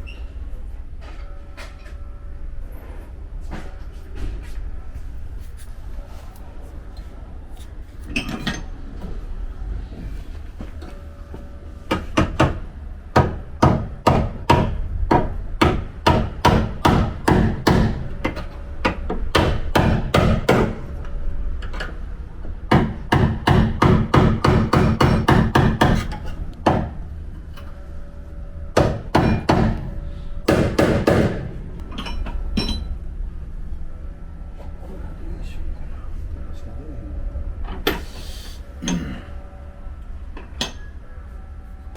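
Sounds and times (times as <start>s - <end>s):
hammer striking steel panel: 13.2s - 20.9s, 22.7s - 27.0s, 28.8s - 31.6s.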